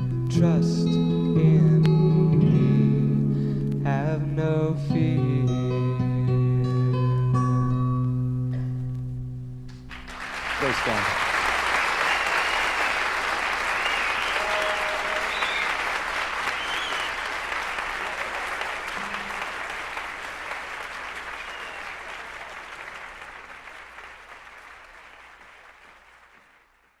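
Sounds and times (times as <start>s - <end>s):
audience applauding: 9.9s - 27.0s
high calls from audience: 10.0s - 24.6s.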